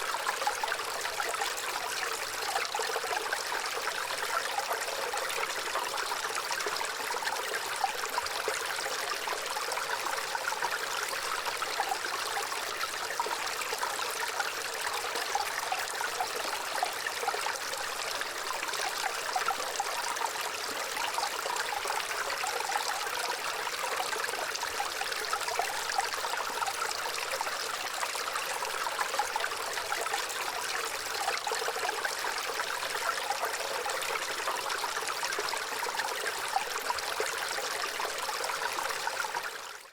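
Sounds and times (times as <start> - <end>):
stream trickling and babbling: 0.0 - 39.9.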